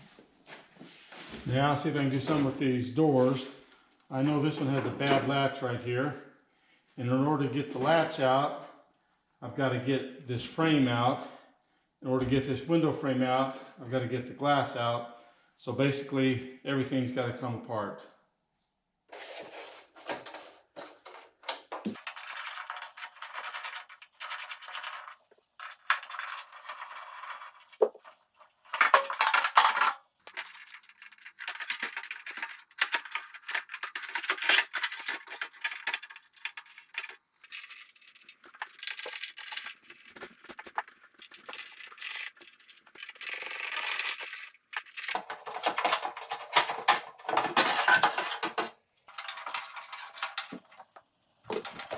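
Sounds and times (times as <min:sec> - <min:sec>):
metal tools clinking and clattering: 0:20.0 - 0:51.9.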